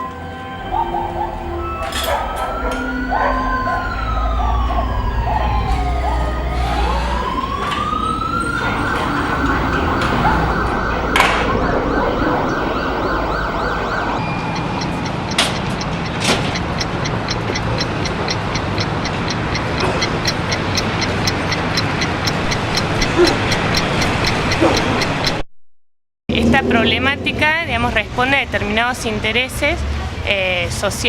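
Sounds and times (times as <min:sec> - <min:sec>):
siren wailing: 0:00.0 - 0:25.0
city street traffic: 0:00.0 - 0:25.4, 0:26.3 - 0:31.0
sharp bangs: 0:00.8 - 0:16.8.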